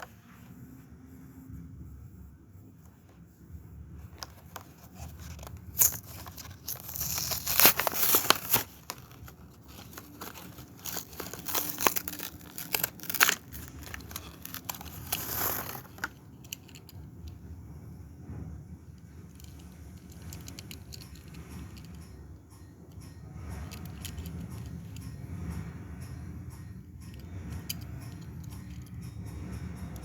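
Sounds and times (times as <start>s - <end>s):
plastic crinkling: 4.1s - 16.9s
cardboard ripping: 4.8s - 16.1s.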